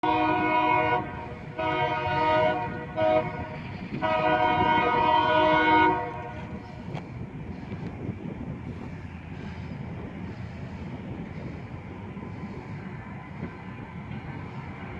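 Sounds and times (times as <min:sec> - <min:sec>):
train air horn blasts: 0:00.0 - 0:06.6
train rumble: 0:00.0 - 0:14.9.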